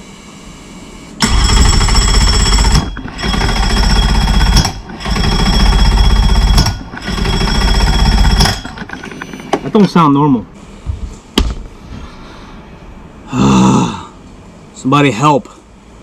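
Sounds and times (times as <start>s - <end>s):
electric starter cranking engine: 1.2s - 9.5s.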